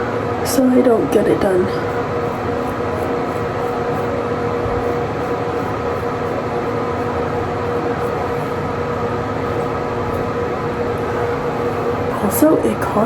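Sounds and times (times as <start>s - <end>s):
mechanical whir with hum: 0.0s - 13.0s.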